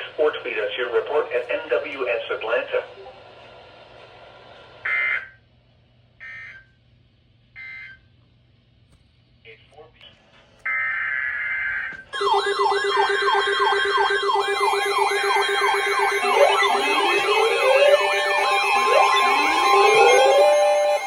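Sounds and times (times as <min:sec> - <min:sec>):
electronic sirens yelping: 0:10.7 - 0:21.0
rising siren wails: 0:12.2 - 0:21.0
warbling data tones: 0:12.2 - 0:21.0.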